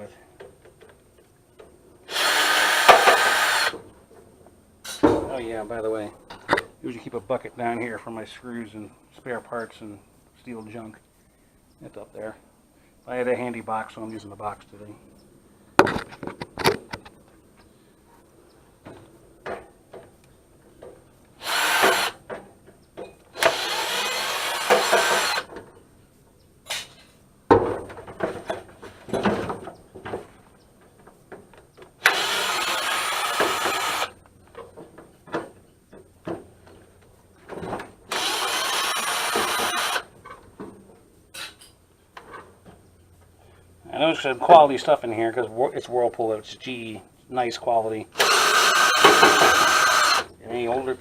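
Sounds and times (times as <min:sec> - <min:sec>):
power screwdriver running: 0:02.1 - 0:03.8, 0:21.4 - 0:22.2, 0:23.4 - 0:25.5, 0:32.0 - 0:34.1, 0:38.1 - 0:40.0, 0:48.2 - 0:50.3
sharp clicks and knocks: 0:15.8 - 0:17.7.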